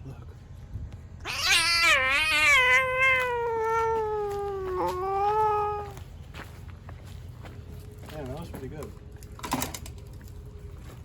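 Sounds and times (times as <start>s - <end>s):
cat yowling: 1.2s - 6.0s.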